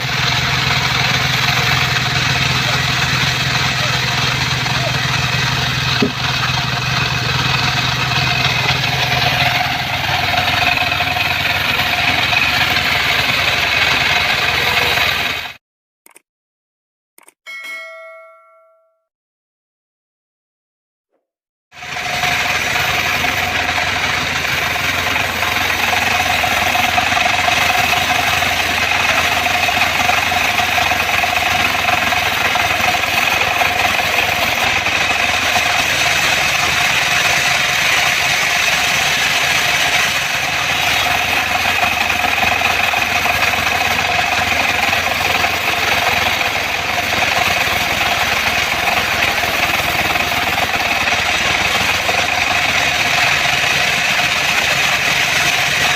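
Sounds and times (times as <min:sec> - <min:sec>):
bandsaw sawmill running: 0:00.0 - 0:15.6, 0:21.8 - 0:55.9.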